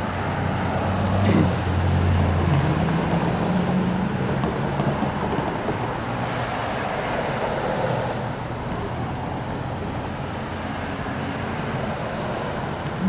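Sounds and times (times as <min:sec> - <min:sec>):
train wheels rumbling on rails: 0:02.4 - 0:10.2.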